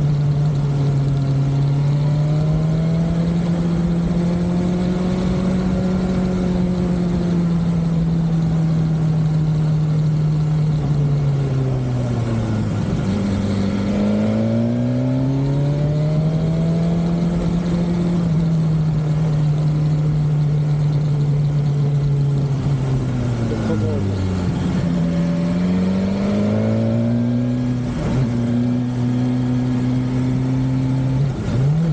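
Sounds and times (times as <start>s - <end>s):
motorcycle engine running: 0.0s - 31.9s.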